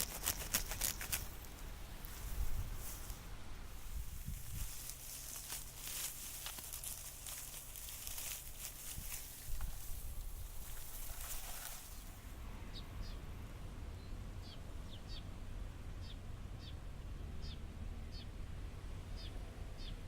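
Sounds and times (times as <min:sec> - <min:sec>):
dry rustling: 0:00.0 - 0:12.3.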